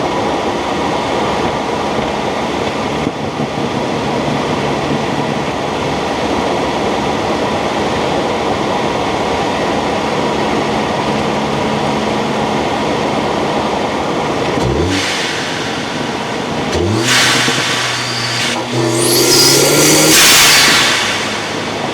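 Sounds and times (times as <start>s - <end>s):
road and wind noise: 10.2s - 21.9s
car engine under load: 10.8s - 21.9s
turbo hiss: 14.6s - 21.9s.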